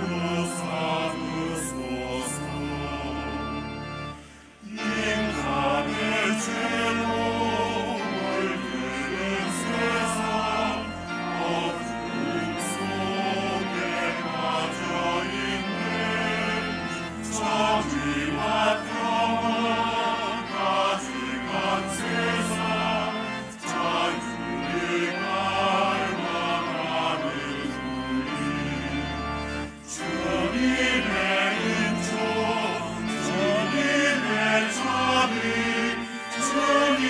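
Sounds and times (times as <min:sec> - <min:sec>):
choir singing: 0:00.0 - 0:37.0.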